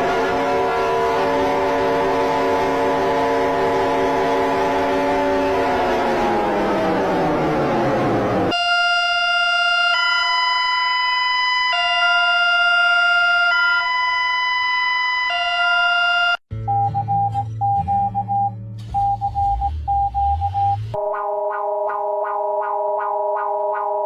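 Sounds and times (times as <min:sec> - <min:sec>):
falling siren-like pitch glide: 0:00.0 - 0:16.4
hi-lo electronic alarm: 0:05.6 - 0:16.4, 0:17.9 - 0:24.0
broken-up beeping tone: 0:15.4 - 0:24.0.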